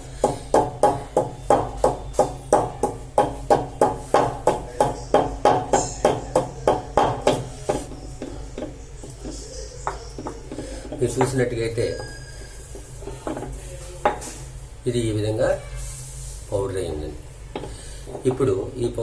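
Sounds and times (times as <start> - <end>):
pestle pounding in mortar: 0.0 - 12.1.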